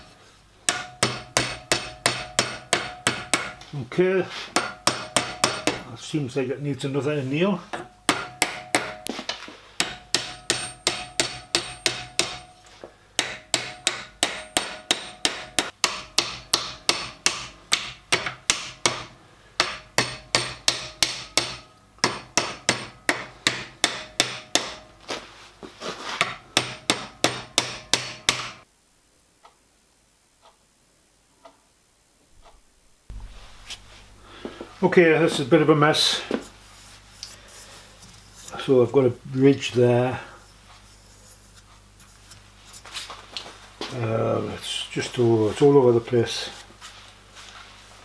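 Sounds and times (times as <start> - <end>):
hammer on copper sheet: 0.7 - 3.7, 4.5 - 5.9, 7.8 - 9.2, 9.8 - 24.9, 26.2 - 28.6.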